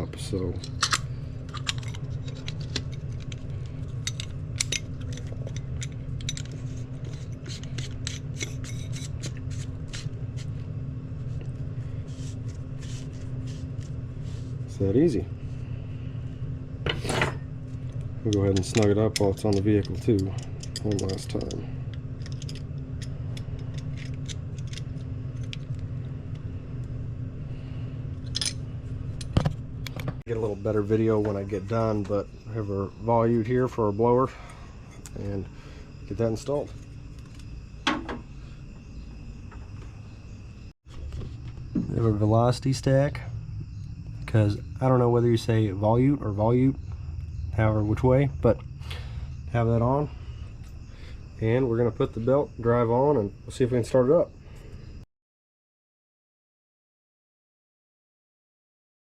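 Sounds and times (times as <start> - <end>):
steady low hum: 0.0 - 55.1
metallic clicks and scrapes: 0.6 - 10.5, 18.3 - 25.8.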